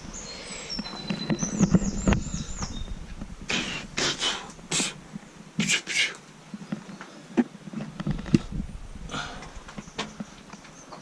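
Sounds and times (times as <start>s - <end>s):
small bird chirping: 0.0s - 3.0s.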